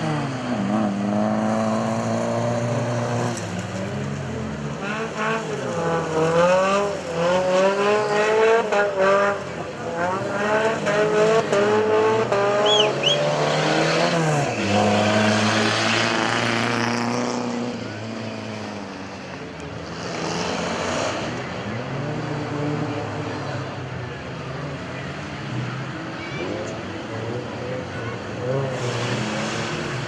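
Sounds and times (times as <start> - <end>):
engine revving hard: 4.9 - 17.6.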